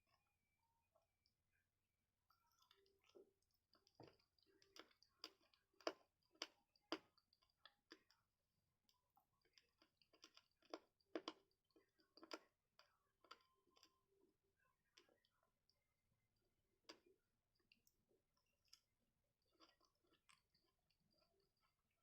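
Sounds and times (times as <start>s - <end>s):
chewing crisp fruit: 2.4s - 8.2s, 8.9s - 14.1s.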